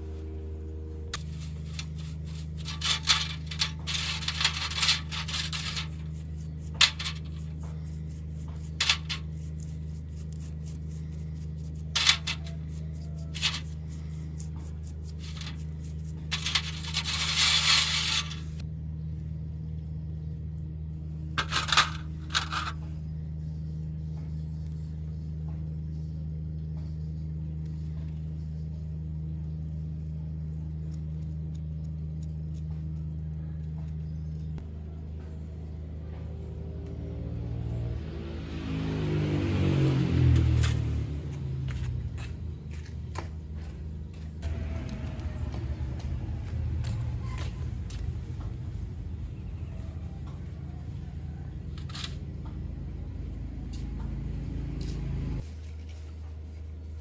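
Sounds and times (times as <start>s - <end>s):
steady low hum: 0.0s - 57.0s
metal parts clinking and scraping: 1.2s - 18.6s, 21.4s - 23.0s.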